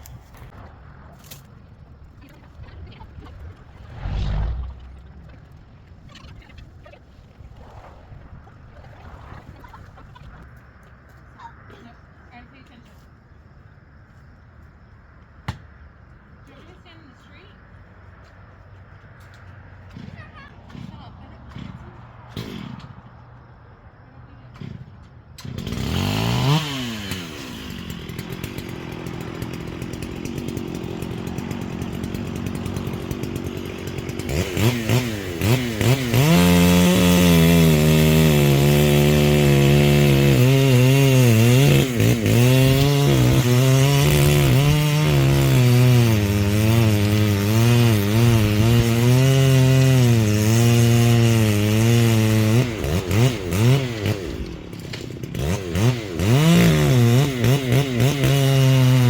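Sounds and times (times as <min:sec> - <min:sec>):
chainsaw revving and cutting wood: 0:19.8 - 0:23.2, 0:24.4 - 0:59.0.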